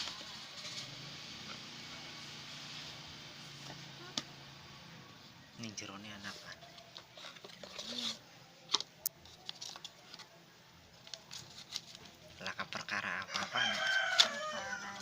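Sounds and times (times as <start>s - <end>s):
rooster crowing: 13.2s - 15.0s.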